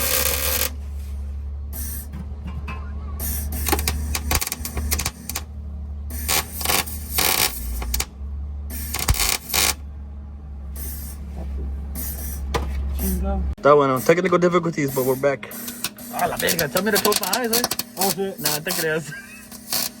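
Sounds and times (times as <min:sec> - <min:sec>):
welder crackling bursts: 0:00.0 - 0:00.8, 0:03.2 - 0:05.5, 0:06.1 - 0:08.1, 0:08.7 - 0:09.8, 0:14.8 - 0:20.0
steady low hum: 0:00.0 - 0:20.0.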